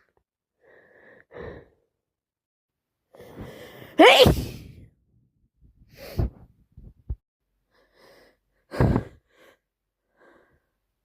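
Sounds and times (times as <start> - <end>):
woman sneezing: 4.0 - 4.5.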